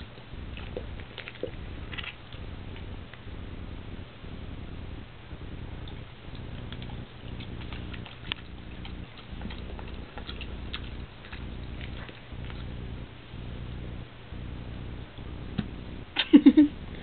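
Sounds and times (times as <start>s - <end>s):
dog chewing and licking: 0.0s - 3.3s, 5.7s - 13.0s
low rumbling hum: 0.0s - 17.0s.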